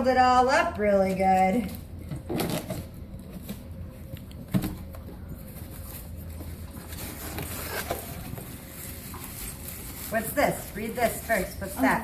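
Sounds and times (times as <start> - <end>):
gift box rustling: 5.4 - 12.0.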